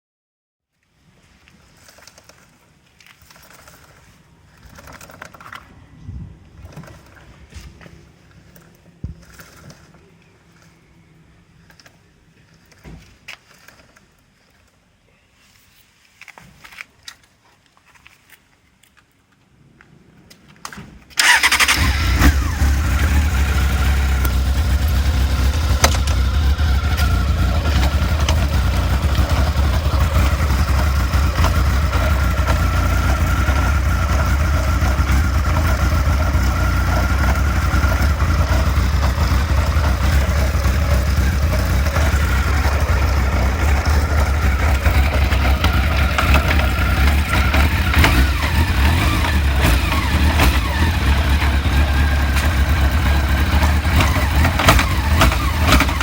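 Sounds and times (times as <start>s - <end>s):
engine starting and idling: 21.2s - 56.0s.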